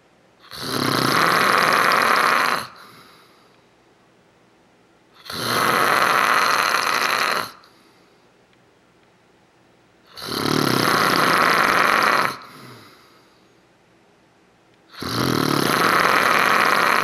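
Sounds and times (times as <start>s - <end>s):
man snoring loudly: 0.4s - 3.2s, 5.2s - 7.7s, 10.1s - 13.2s, 14.9s - 17.0s.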